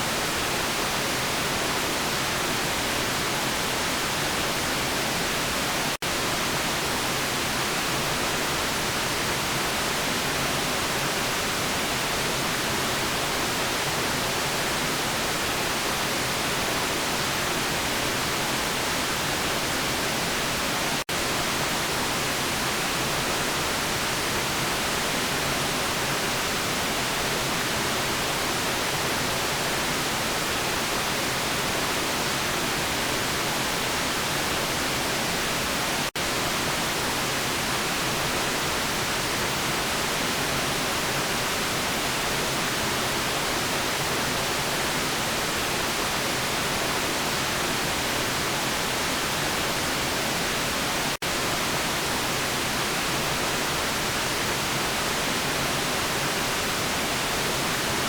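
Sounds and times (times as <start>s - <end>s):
white noise hiss: 0.0s - 58.0s.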